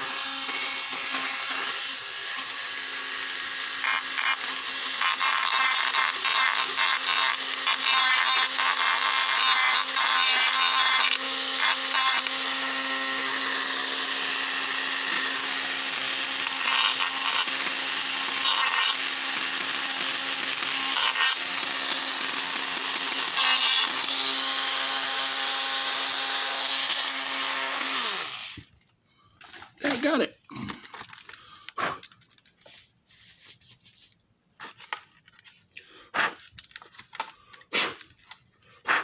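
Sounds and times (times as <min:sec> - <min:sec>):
rotary tool whining: 0:00.0 - 0:28.8
tool scraping: 0:29.4 - 0:39.0.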